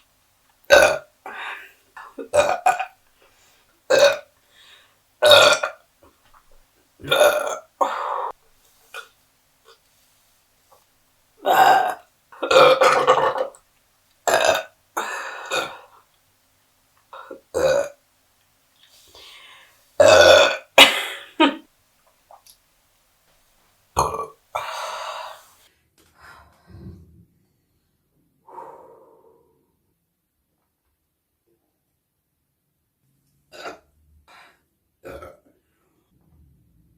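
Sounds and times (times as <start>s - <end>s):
woman burping: 0.7s - 2.9s, 3.9s - 4.3s, 5.2s - 5.8s, 7.0s - 8.4s, 11.4s - 13.6s, 14.3s - 16.0s, 17.2s - 18.0s, 20.0s - 21.6s, 24.0s - 25.3s, 33.5s - 33.8s, 35.0s - 35.5s.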